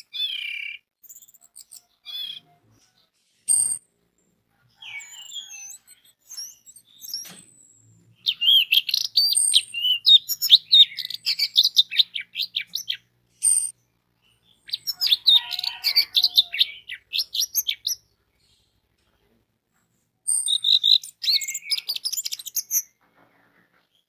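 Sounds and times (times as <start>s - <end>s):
bird singing whistled notes: 0.0s - 2.5s, 4.8s - 18.1s, 20.3s - 22.9s.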